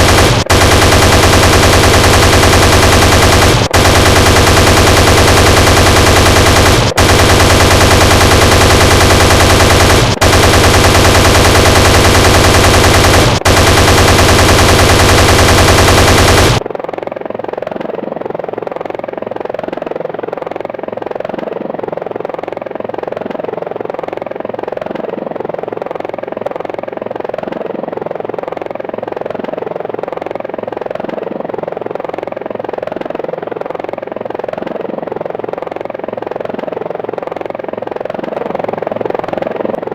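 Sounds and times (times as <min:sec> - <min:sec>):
helicopter chain gun firing: 0:00.0 - 0:16.9
helicopter rotor and engine: 0:00.0 - 0:39.9.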